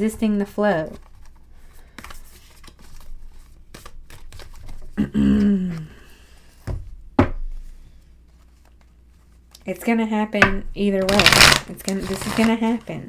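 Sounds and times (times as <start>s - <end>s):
cards tapping and sliding: 11.0s - 12.9s.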